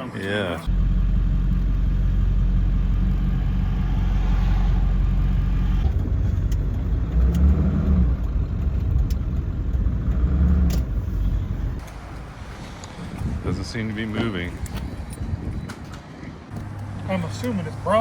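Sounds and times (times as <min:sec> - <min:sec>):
engine humming: 0:00.2 - 0:14.0.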